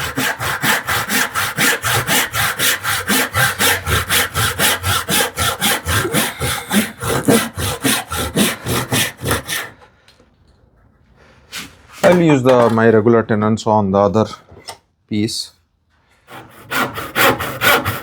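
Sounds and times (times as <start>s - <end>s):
hand saw cutting wood: 0.0s - 9.9s, 16.3s - 18.0s.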